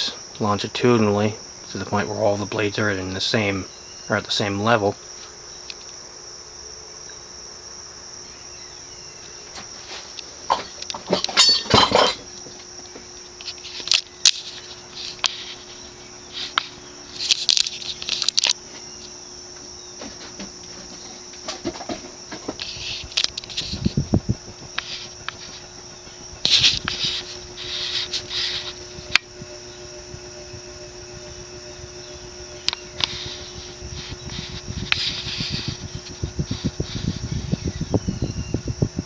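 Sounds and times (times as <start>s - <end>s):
ceiling fan humming and chirring: 0.0s - 39.0s
knocks and clatter: 10.5s - 12.3s.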